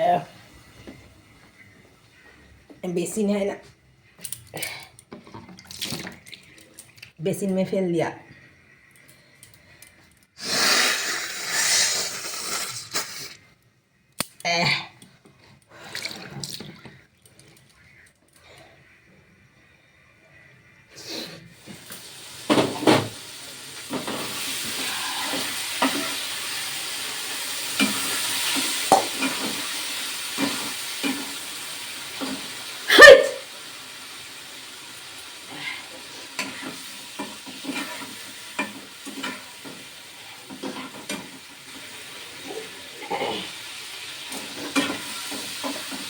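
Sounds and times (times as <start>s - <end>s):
curry sizzling in a pan: 21.6s - 46.0s
spatula knocking and scraping pan: 36.4s - 39.9s.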